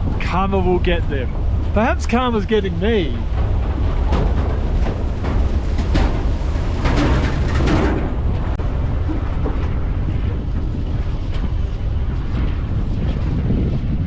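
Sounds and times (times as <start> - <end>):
pickup truck rumble: 0.0 - 11.2
wind buffeting microphone: 0.0 - 14.0.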